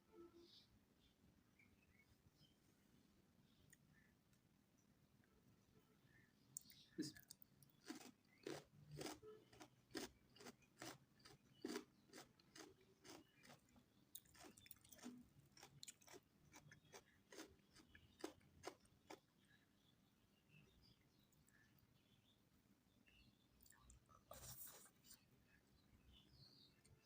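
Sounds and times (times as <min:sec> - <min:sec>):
faint wet chewing crunches: 0:06.5 - 0:19.4.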